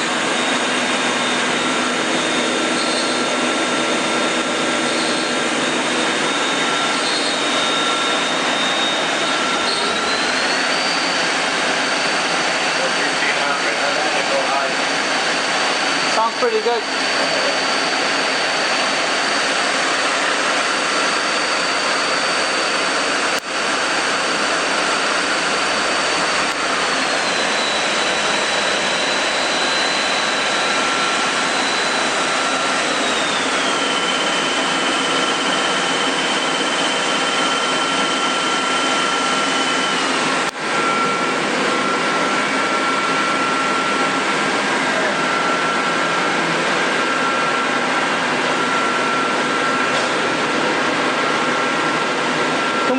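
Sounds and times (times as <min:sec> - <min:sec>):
lathe spindle whirring: 0:00.0 - 0:52.9.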